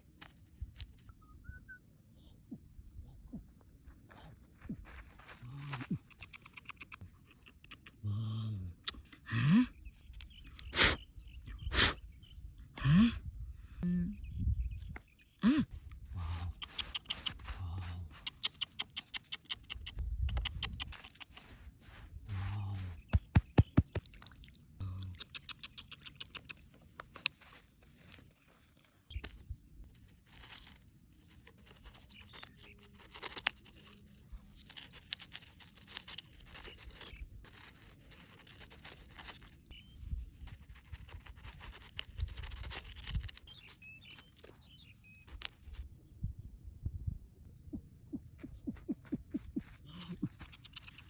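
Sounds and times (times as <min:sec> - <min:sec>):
handling clicks taps and scrapes: 0:16.5 - 0:24.3, 0:25.1 - 0:39.6, 0:48.4 - 0:51.0.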